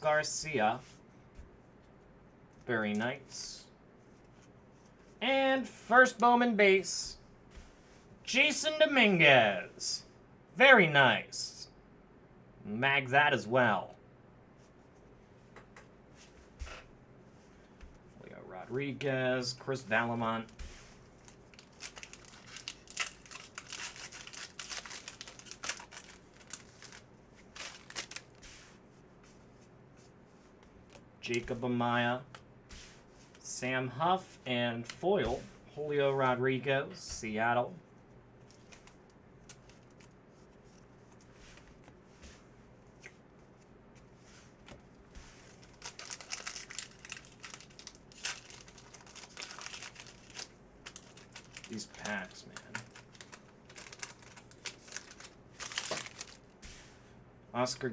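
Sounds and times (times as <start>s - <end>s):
foil wrapper crinkling and tearing: 21.2s - 28.4s, 45.4s - 56.6s.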